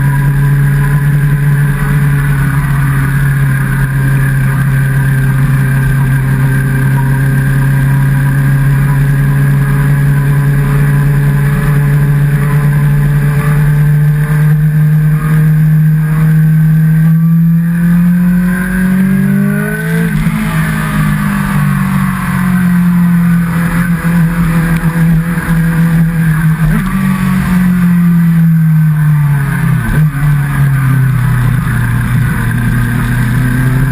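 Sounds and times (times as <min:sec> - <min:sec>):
motorcycle engine running: 0:00.0 - 0:33.9.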